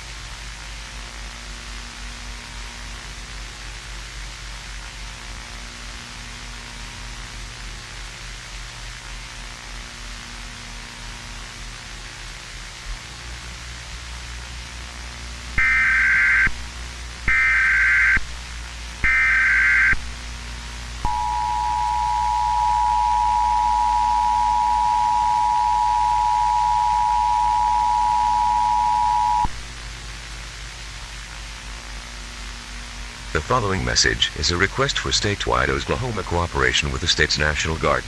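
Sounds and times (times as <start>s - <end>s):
steady hiss: 0.0s - 38.0s
digital data bursts: 15.6s - 16.6s, 19.0s - 20.1s, 21.0s - 29.5s
low hum: 18.2s - 30.0s
two-tone attention signal: 21.0s - 29.5s.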